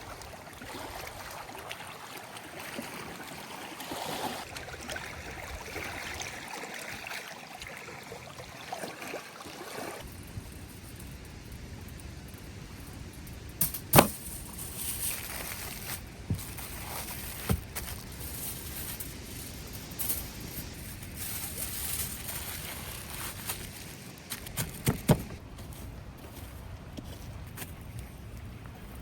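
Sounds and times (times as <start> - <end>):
steady outdoor hiss: 10.0 - 29.0.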